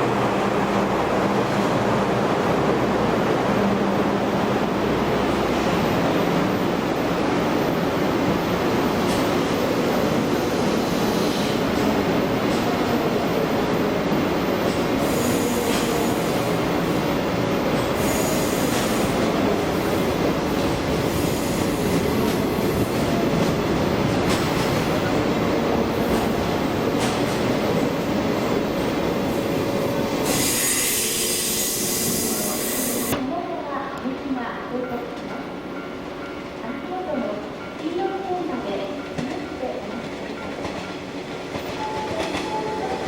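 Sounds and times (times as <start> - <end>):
train rumbling on rails: 0.0 - 43.0.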